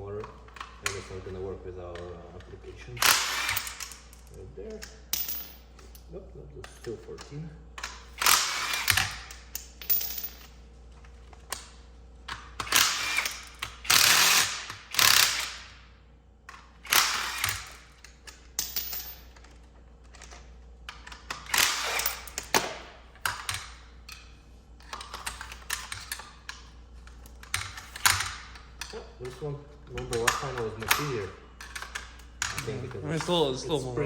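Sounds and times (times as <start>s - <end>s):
ratchet wrench clicking: 7.9s - 10.0s, 12.6s - 15.6s.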